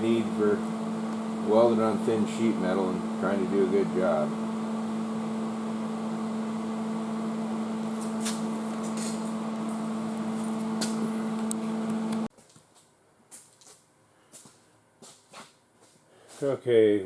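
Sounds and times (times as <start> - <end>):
electrical machine hum: 0.0 - 12.3.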